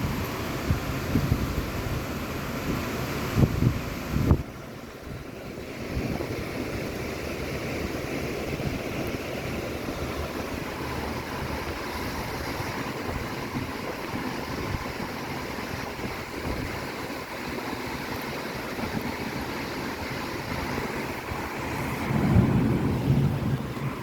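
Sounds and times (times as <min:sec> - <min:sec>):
strong wind blowing: 0:00.0 - 0:24.0.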